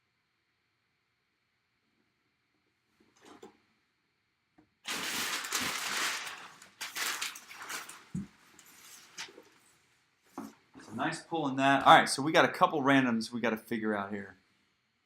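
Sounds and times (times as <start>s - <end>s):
packaging rustling and crinkling: 4.9s - 9.8s.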